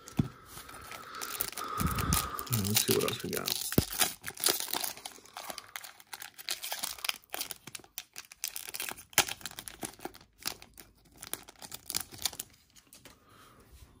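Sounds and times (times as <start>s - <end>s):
wrapper crinkling and tearing: 0.0s - 13.0s.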